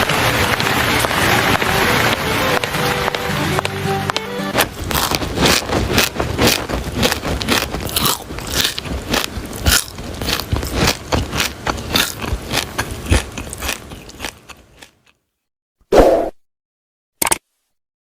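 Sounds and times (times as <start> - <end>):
gritty crunching and scraping: 3.6 - 15.0.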